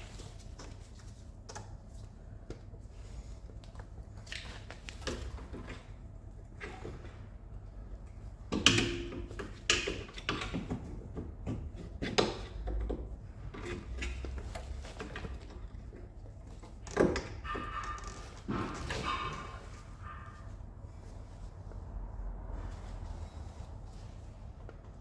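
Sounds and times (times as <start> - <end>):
tools knocking and clunking: 8.4 - 20.4.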